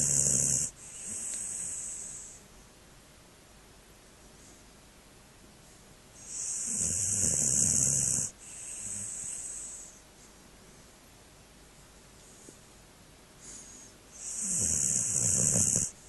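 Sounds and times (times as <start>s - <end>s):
dog breathing: 0.0s - 2.4s, 6.2s - 10.4s, 13.4s - 16.0s
dog snoring: 0.0s - 2.4s, 6.2s - 10.0s, 13.4s - 16.0s.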